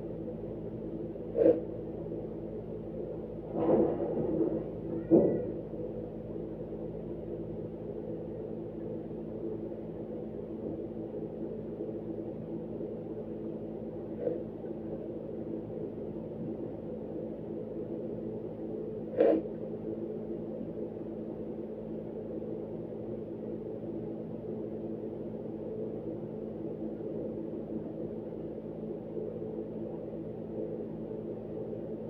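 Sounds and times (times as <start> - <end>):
steady background hum: 0.0 - 32.0.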